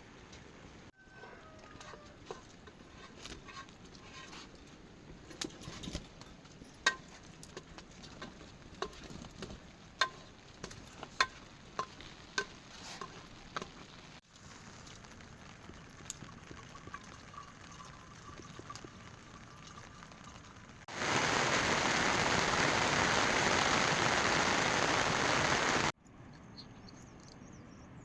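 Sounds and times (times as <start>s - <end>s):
rain hissing: 11.5s - 26.0s.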